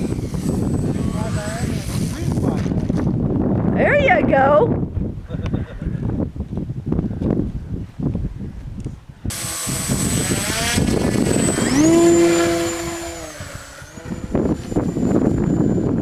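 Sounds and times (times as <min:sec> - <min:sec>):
model airplane motor whine: 0:00.0 - 0:03.1, 0:09.3 - 0:16.0
wind gusts on microphone: 0:00.0 - 0:16.0.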